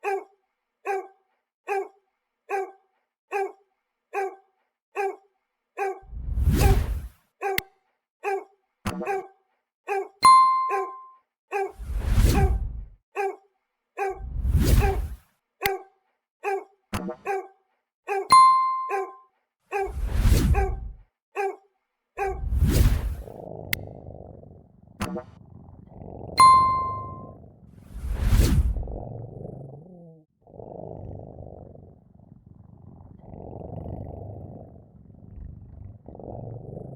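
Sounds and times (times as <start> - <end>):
dog barking: 0.0 - 6.1, 8.2 - 10.9, 13.2 - 13.4, 15.6 - 18.3, 21.4 - 21.6
bell-like ding: 10.2 - 11.2, 18.3 - 19.0, 26.4 - 27.3.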